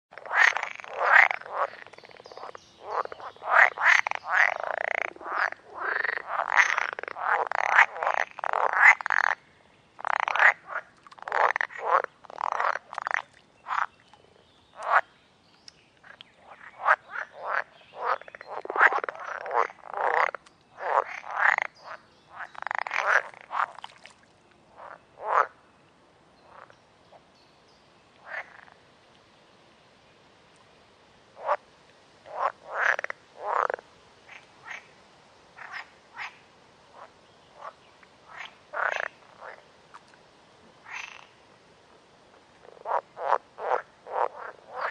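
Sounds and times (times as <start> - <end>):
frogs croaking: 0.1 - 15.2, 16.0 - 24.0, 24.7 - 25.7, 26.4 - 27.3, 28.2 - 28.9, 31.4 - 40.1, 40.8 - 44.9.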